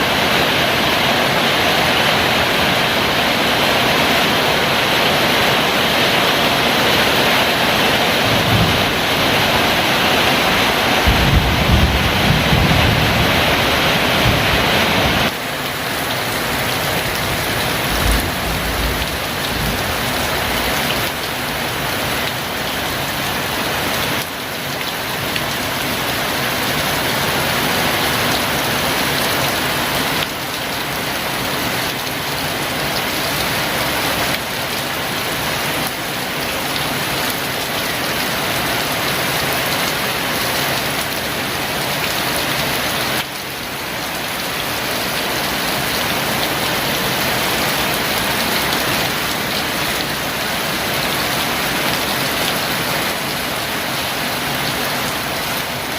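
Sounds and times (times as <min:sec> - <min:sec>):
heavy rain pouring: 0:00.0 - 0:55.9.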